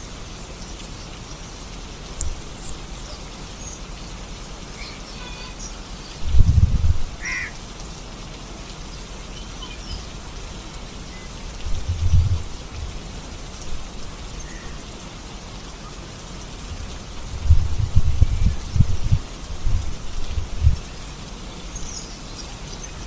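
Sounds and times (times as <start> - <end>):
steady rain falling: 0.0 - 23.0
bird call: 2.2 - 6.2, 7.2 - 7.6.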